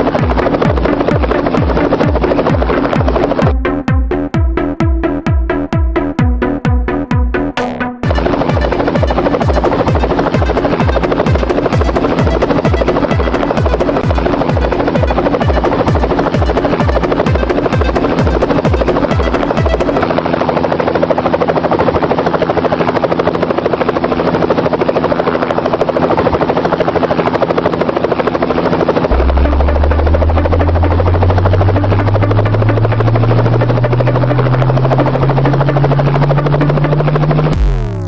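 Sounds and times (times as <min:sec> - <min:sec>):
helicopter rotor buzz: 0:00.0 - 0:06.6, 0:07.6 - 0:38.0
low hum rising in pitch: 0:00.0 - 0:20.0, 0:29.1 - 0:38.0.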